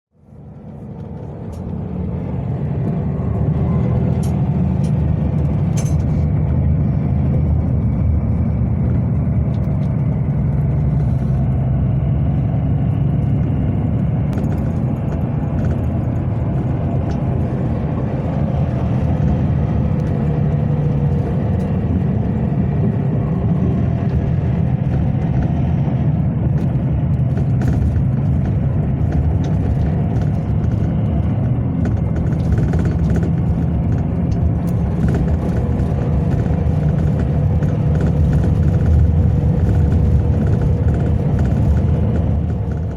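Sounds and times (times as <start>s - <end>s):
bus engine and road rumble: 0.0s - 42.9s.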